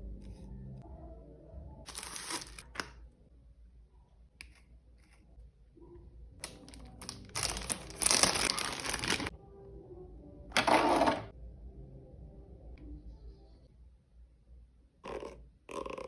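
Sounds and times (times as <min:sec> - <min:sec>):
packaging crinkling and tearing: 0:01.9 - 0:02.8, 0:06.4 - 0:09.3.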